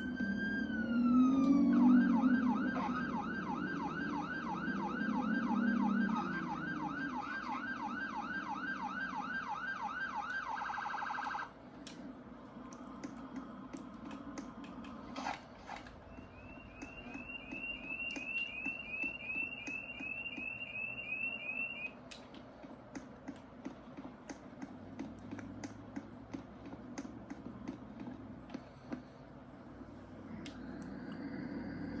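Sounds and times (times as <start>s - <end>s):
house alarm siren whooping: 0.0s - 11.5s, 16.0s - 22.0s.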